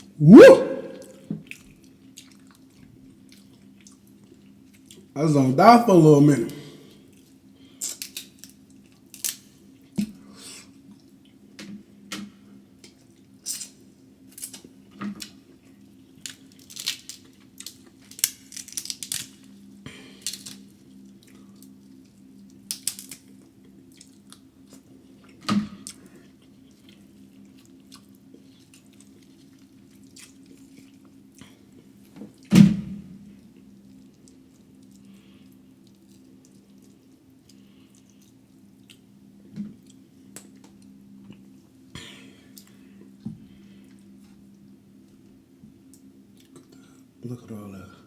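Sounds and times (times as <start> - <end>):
chewing and smacking: 1.4 - 5.1, 7.0 - 10.0, 12.8 - 19.6, 20.2 - 32.5, 33.4 - 41.7, 43.8 - 47.1
crab shell cracking: 7.9 - 9.5, 16.2 - 19.5.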